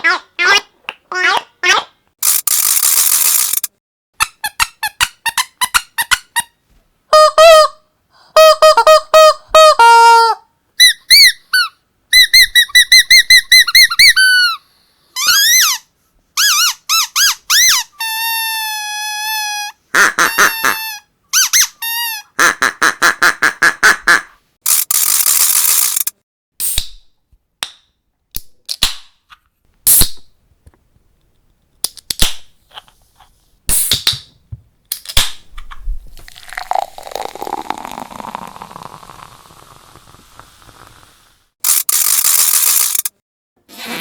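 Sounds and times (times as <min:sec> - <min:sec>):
squeaky dog toy squeaking: 0:08.4 - 0:14.6, 0:15.2 - 0:22.4
beer fizzing: 0:36.1 - 0:40.7
beer can opening hiss: 0:36.2 - 0:43.1.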